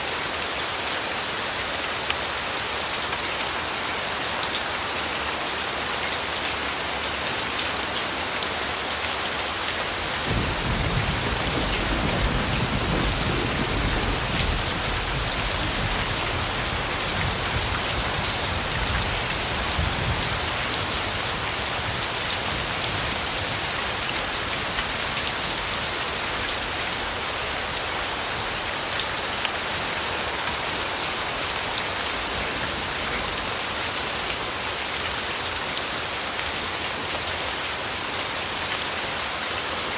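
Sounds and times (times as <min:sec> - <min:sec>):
rain falling: 0:00.0 - 0:39.9
thunder rumbling: 0:10.3 - 0:17.8.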